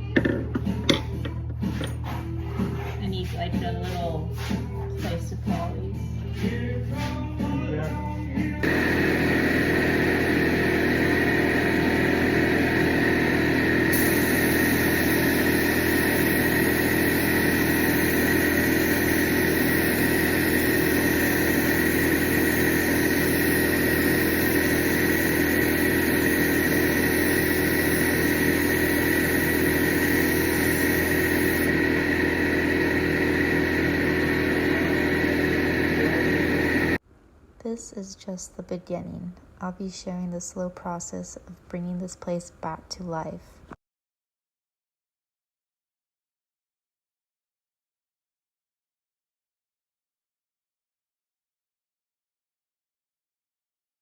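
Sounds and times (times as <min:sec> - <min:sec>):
machine humming and whining: 0:08.6 - 0:37.0.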